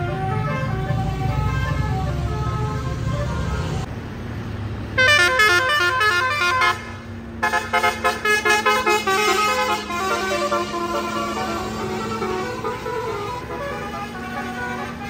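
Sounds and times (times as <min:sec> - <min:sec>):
low engine rumble: 0:00.0 - 0:15.0
musical air horn tune: 0:05.0 - 0:15.0.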